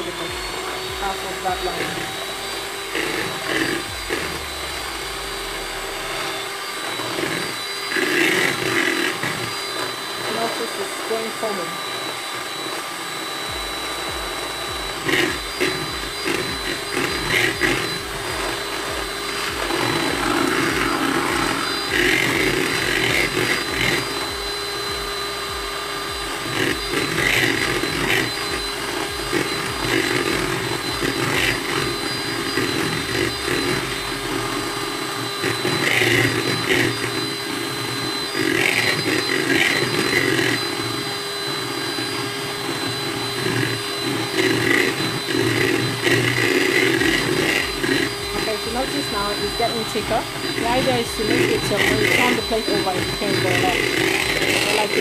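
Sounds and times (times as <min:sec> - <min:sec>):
electric hand mixer running: 0:00.0 - 0:55.0.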